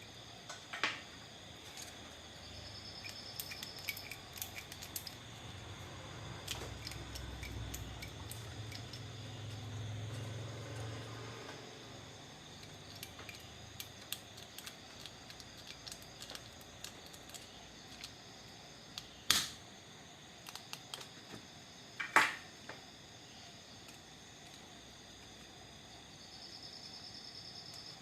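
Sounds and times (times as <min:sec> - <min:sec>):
desoldering pump plunger snapping: 0:03.0 - 0:05.2, 0:18.9 - 0:19.6.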